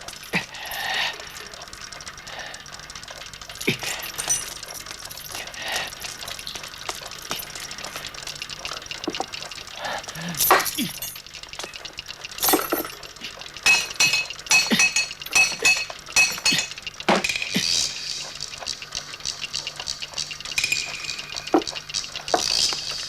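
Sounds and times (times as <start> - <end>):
sharp clinking impacts: 12.4 - 13.0, 13.6 - 18.0, 20.5 - 23.0
glass crash shattering: 13.7 - 17.6.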